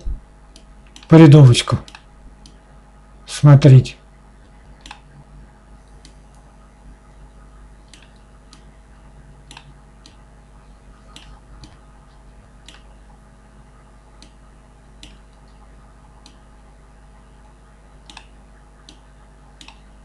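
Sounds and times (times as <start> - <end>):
faint steady low hum: 0.0 - 20.0
computer mouse clicking: 1.8 - 2.6, 4.8 - 5.1, 7.9 - 8.7, 9.5 - 10.2, 12.6 - 12.9, 14.2 - 14.4, 15.0 - 15.5, 18.0 - 19.8.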